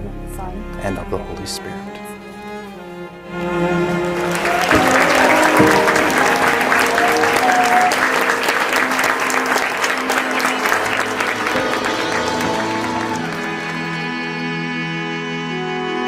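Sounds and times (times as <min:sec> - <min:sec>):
instrumental background music: 0:00.0 - 0:16.0
people clapping: 0:03.7 - 0:14.6.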